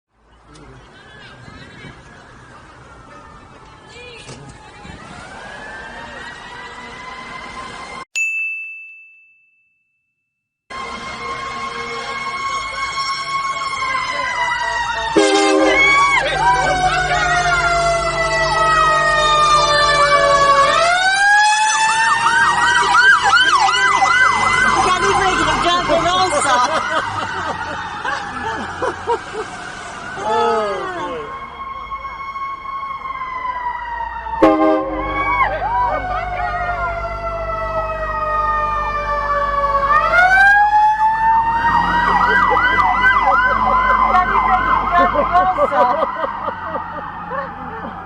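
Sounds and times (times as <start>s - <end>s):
electronic siren yelping: 12.4s - 48.0s
air horn multi-note chord: 15.2s - 15.9s, 34.4s - 35.3s.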